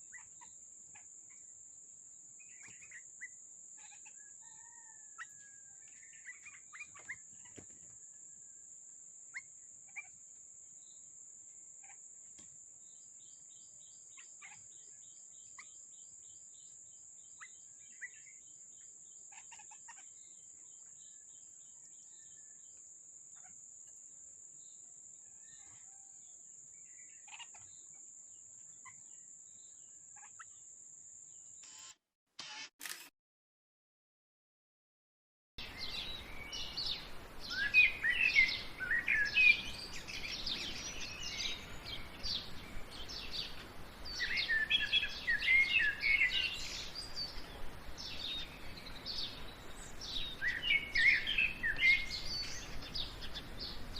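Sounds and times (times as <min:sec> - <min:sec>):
birds chirping: 0:35.6 - 0:53.9.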